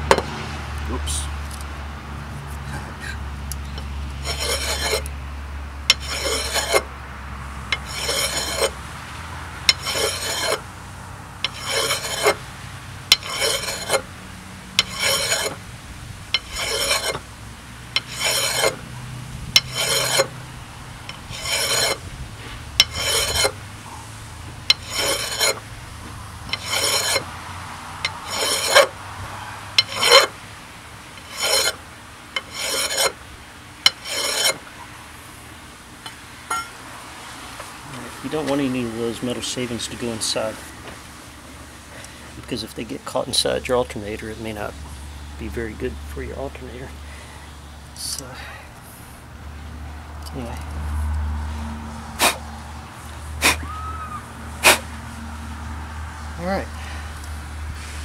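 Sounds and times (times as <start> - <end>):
hand file rasping on metal: 4.2 - 5.1, 5.9 - 6.9, 7.7 - 8.8, 9.7 - 10.6, 11.4 - 12.4, 13.1 - 14.1, 14.8 - 15.6, 16.3 - 17.3, 18.0 - 18.9, 19.6 - 20.4, 21.1 - 22.0, 22.8 - 23.6, 24.7 - 25.7, 26.5 - 27.3, 28.0 - 29.0, 29.8 - 30.4, 31.2 - 31.8, 32.4 - 33.2, 33.9 - 34.6.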